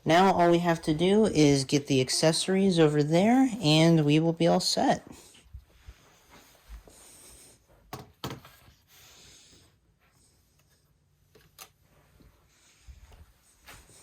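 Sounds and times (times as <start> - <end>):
soft rustling and scraping: 5.1 - 14.0.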